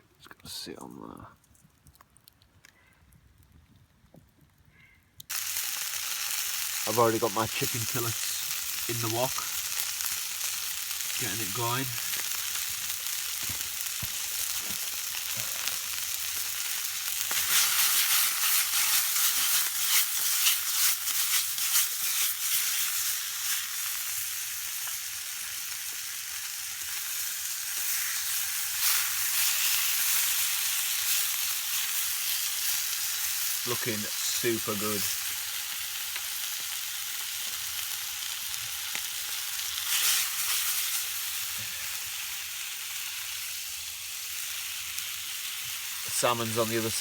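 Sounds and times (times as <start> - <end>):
oil crackling and spitting: 0.3 - 3.5, 5.3 - 35.2, 38.6 - 42.1
chicken sizzling in a wok: 5.3 - 47.0.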